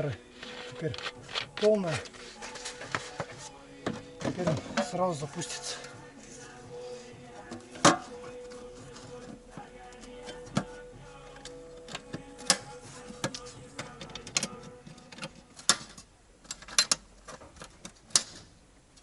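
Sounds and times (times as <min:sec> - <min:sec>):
faint steady hum: 0:00.0 - 0:19.0
metal tools clicking and knocking: 0:16.4 - 0:18.3.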